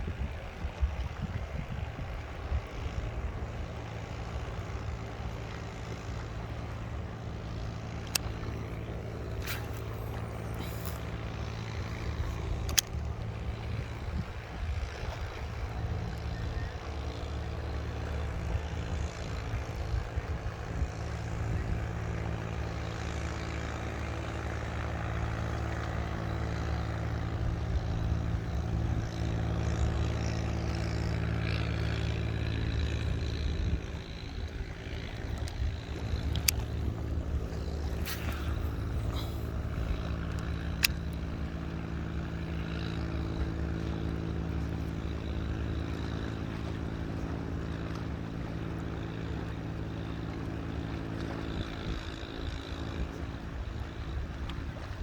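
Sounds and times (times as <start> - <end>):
small boat engine running: 0.0 - 55.0
sharp clicks: 8.0 - 8.6, 12.4 - 13.1.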